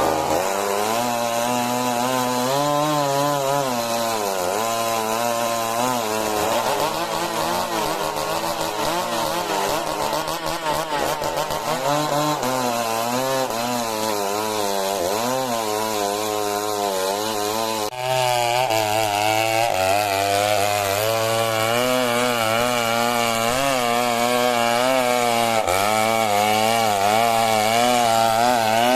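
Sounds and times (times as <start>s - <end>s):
chainsaw cutting timber: 0.0s - 28.9s.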